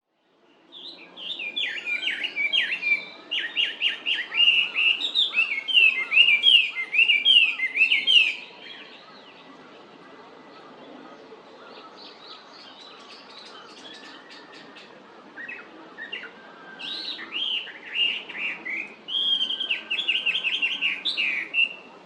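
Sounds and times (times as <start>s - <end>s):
bird singing varied whistles: 1.3s - 8.4s, 15.5s - 21.8s.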